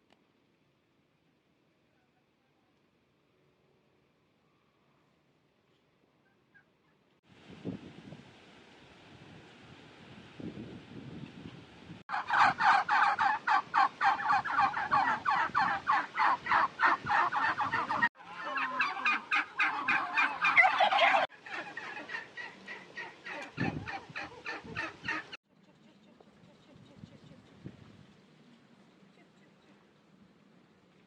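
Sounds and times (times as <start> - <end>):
turkeys gobbling: 12.1 - 25.4.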